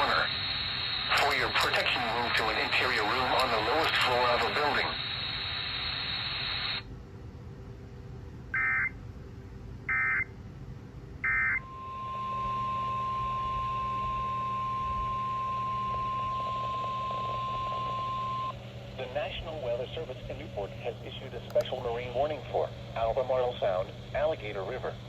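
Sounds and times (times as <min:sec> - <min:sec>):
steady warning alarm tone: 0:08.6 - 0:09.0, 0:09.9 - 0:10.3, 0:11.2 - 0:21.3.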